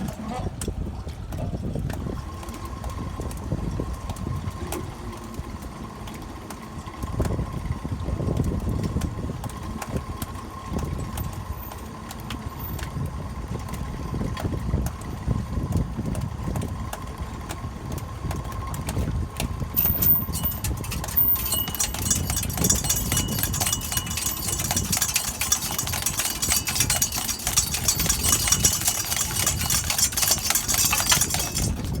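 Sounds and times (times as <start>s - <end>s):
boat engine idling: 19.7s - 32.0s.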